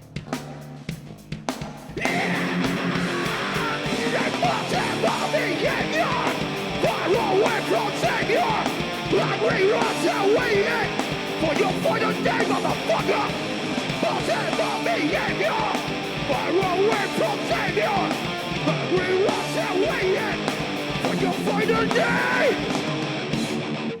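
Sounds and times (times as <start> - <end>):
punk rock band playing: 0.0 - 24.0
shouted vocals: 2.0 - 23.1.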